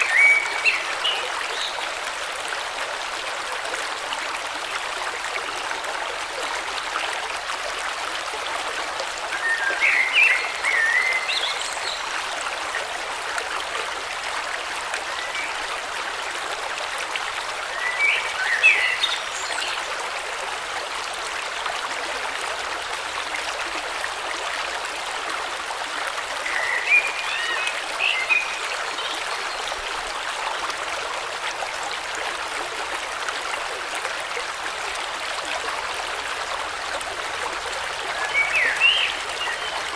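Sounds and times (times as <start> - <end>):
songbird singing: 0.0 - 1.8, 9.4 - 12.2, 26.4 - 29.6, 38.1 - 39.9
stream flowing: 0.0 - 39.9.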